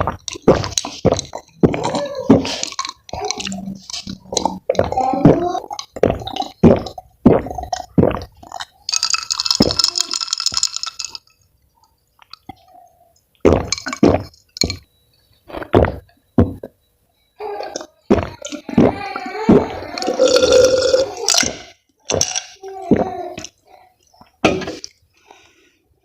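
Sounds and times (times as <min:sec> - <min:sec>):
gulping and swallowing: 0:00.0 - 0:10.1, 0:12.2 - 0:14.8, 0:17.6 - 0:21.6
clinking: 0:08.9 - 0:11.3.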